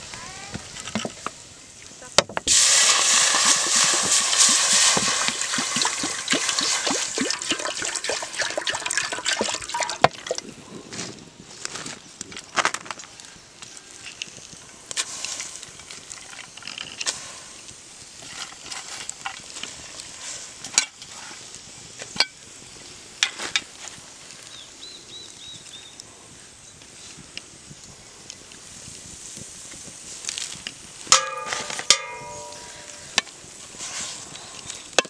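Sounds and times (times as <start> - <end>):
food sizzling in hot oil: 0.0 - 10.6, 11.4 - 26.0, 26.6 - 35.0
spatula scraping a pan: 31.2 - 34.8.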